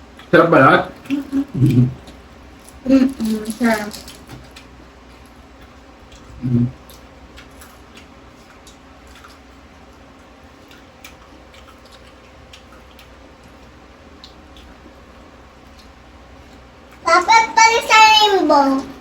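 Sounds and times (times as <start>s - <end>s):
people chewing crispy food: 0.0s - 19.0s
person humming mm: 1.1s - 2.0s, 6.4s - 6.8s.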